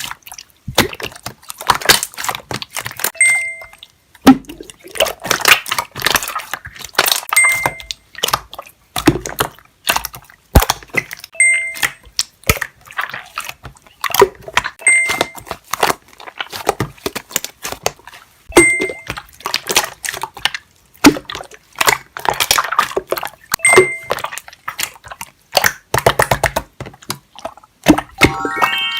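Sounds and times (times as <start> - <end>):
short beep: 23.6 - 24.2.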